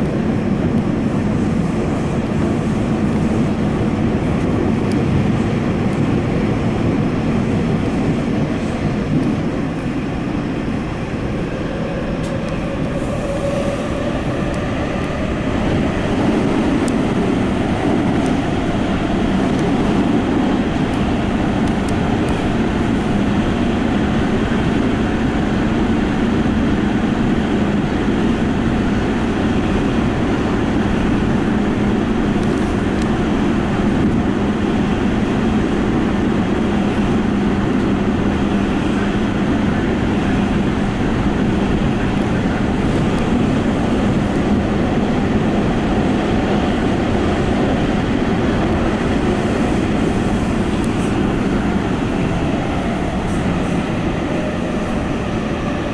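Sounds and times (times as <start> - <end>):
train wheels rumbling on rails: 0.0 - 55.9.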